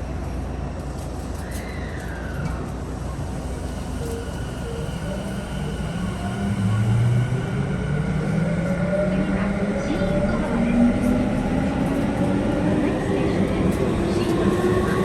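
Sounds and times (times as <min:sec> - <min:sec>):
train rumble: 0:00.0 - 0:15.0
electric train motor whine: 0:03.1 - 0:08.7.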